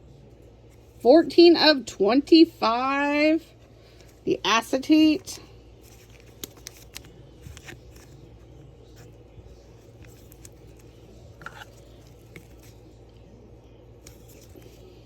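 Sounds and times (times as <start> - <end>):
low room hum: 0.0 - 15.0
trading cards rustling and clicking: 5.8 - 12.9, 14.0 - 15.0.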